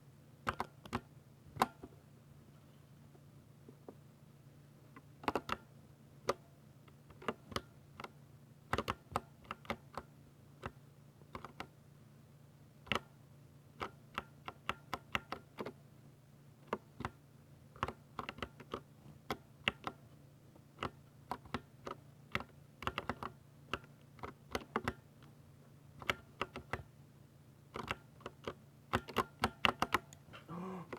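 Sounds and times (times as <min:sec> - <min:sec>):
faint low hum: 0:00.0 - 0:30.9
mechanical keyboard typing: 0:05.2 - 0:05.6, 0:07.1 - 0:11.7, 0:17.8 - 0:20.0, 0:20.8 - 0:25.0, 0:26.0 - 0:26.9, 0:27.7 - 0:30.2.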